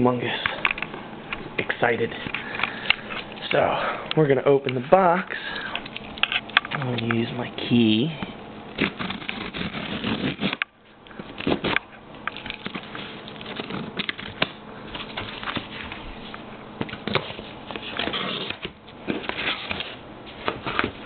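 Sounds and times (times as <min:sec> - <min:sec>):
key scratching packing tape: 0:08.8 - 0:10.7.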